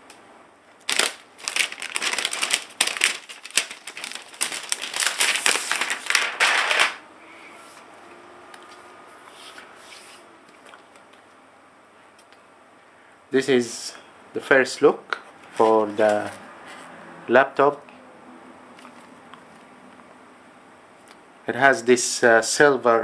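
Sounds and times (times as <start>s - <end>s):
plastic packaging crinkling: 0.8s - 7.0s.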